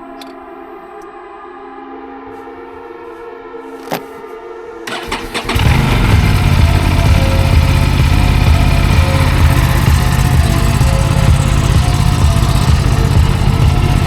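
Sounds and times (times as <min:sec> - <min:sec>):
engine cranking clicks: 0:04.9 - 0:14.0
motorcycle engine idling: 0:04.9 - 0:14.0.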